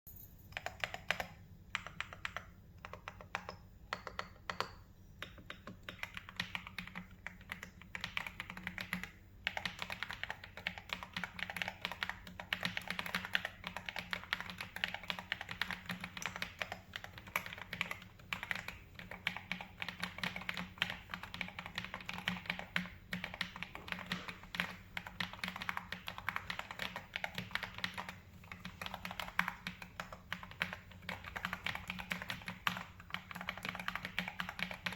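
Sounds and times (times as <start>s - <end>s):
mechanical keyboard typing: 0.5s - 34.9s.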